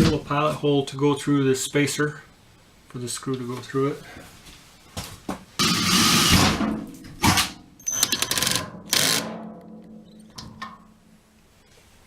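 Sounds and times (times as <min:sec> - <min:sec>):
power drill boring through metal: 0:05.6 - 0:06.6, 0:08.0 - 0:09.2.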